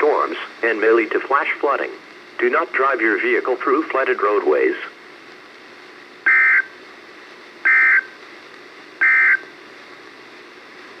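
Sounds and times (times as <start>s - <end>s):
radio hiss: 0.0s - 11.0s
buzzing data burst squawks: 6.3s - 6.7s, 7.7s - 8.1s, 9.0s - 9.5s.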